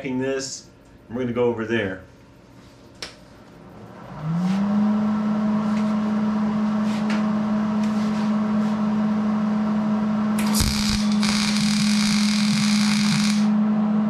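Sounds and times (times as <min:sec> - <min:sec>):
welding machine humming: 0:09.4 - 0:13.6.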